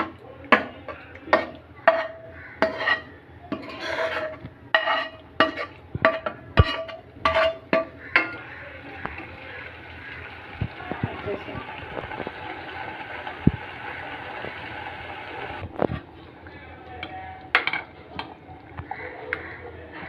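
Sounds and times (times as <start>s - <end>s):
spoon scraping pot: 1.4s - 9.2s.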